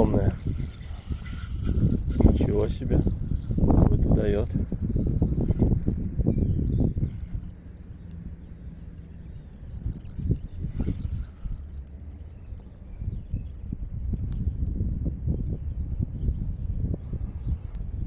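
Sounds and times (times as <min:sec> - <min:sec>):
fishing reel drag buzzing: 0:00.0 - 0:06.1, 0:07.0 - 0:07.8, 0:09.8 - 0:14.7
reel clicking: 0:00.0 - 0:06.1, 0:07.0 - 0:07.6, 0:09.8 - 0:14.5.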